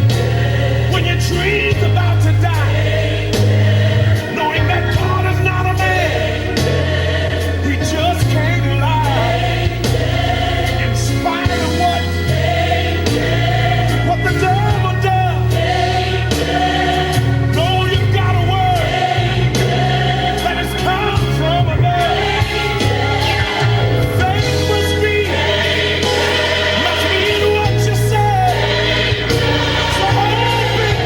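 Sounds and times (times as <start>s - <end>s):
bass line: 0.0s - 31.0s
gospel choir singing: 0.0s - 31.0s.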